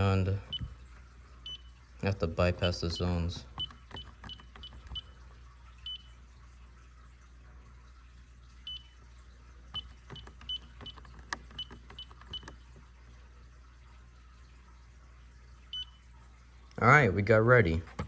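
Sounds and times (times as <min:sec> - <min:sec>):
alarm keypad beeping: 0:00.5 - 0:00.7, 0:01.5 - 0:01.7, 0:02.6 - 0:05.1, 0:05.9 - 0:06.1, 0:08.7 - 0:08.9, 0:09.8 - 0:12.5, 0:15.8 - 0:16.0.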